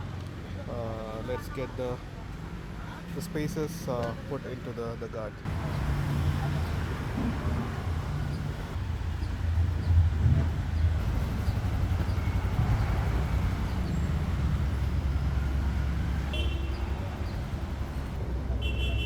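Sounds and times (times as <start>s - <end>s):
street traffic rumble: 0.0s - 19.0s
vehicle horn toot: 16.2s - 17.4s, 18.6s - 19.0s.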